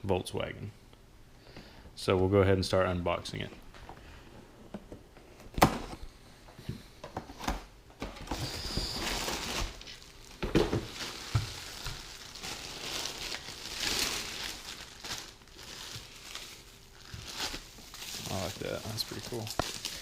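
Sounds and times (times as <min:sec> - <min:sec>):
packaging rustling and crinkling: 0:07.3 - 0:20.0.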